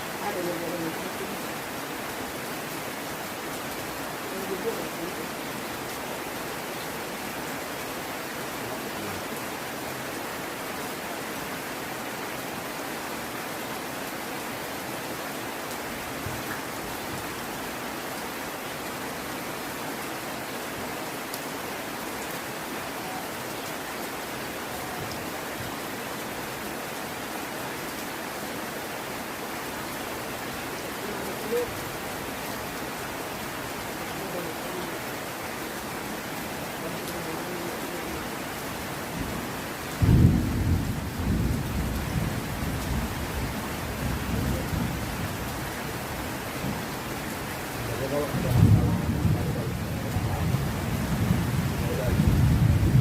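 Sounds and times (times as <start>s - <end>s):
heavy rain falling: 0.0s - 53.0s.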